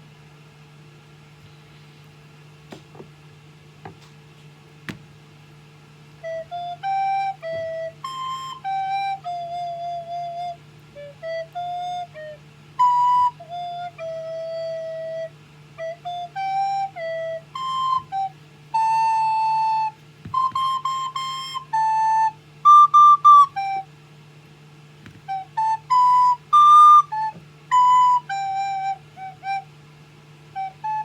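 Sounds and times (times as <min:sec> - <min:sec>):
child playing recorder: 0:06.2 - 0:24.0, 0:25.1 - 0:29.8, 0:30.5 - 0:31.0.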